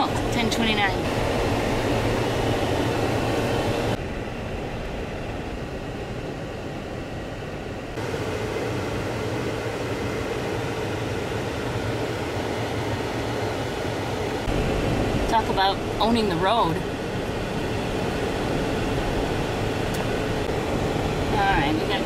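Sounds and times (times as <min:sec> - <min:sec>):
car cabin road and engine noise: 0:00.0 - 0:22.0.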